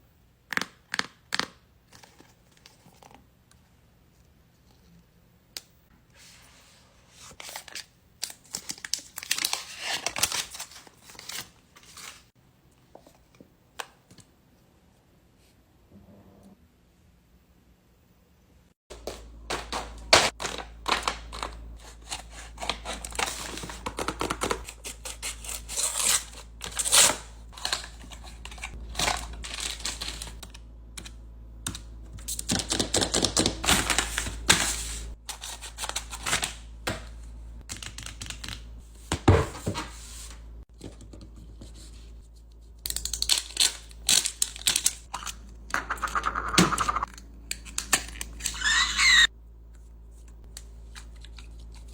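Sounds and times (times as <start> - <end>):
paper crinkling and tearing: 7.3 - 12.3, 19.0 - 30.5, 32.3 - 36.6.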